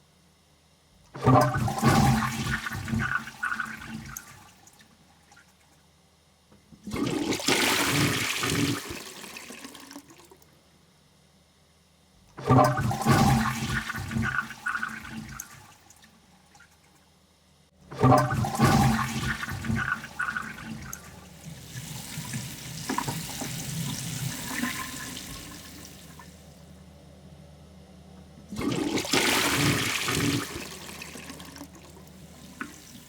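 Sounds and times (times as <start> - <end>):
toilet flushing: 1.1 - 5.6, 6.8 - 10.4, 12.4 - 16.9, 17.8 - 26.8, 28.4 - 33.0.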